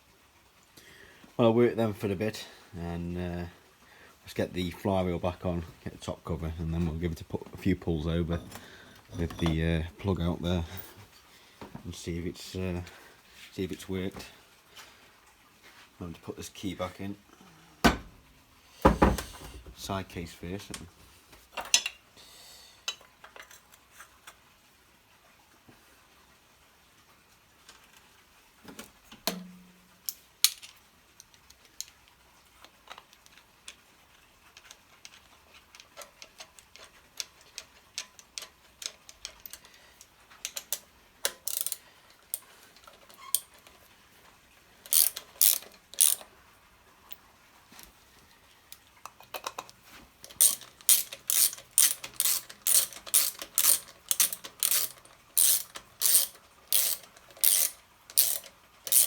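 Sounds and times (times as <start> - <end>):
ratchet wrench clicking: 40.4 - 41.8, 44.9 - 46.3, 50.3 - 59.0
metallic clicks and taps: 49.0 - 59.0.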